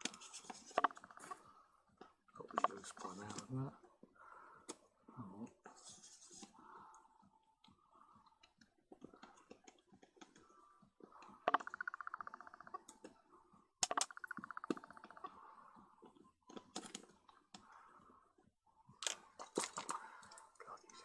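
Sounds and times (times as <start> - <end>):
metal lens parts clicking and scraping: 0.0 - 1.3, 2.6 - 3.5.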